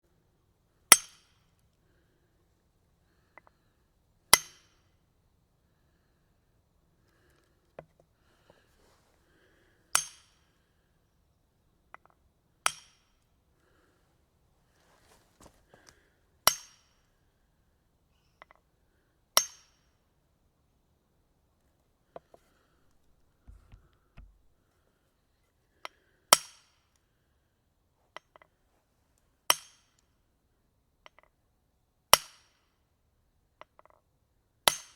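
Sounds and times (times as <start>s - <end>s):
light taps: 22.9s - 24.6s.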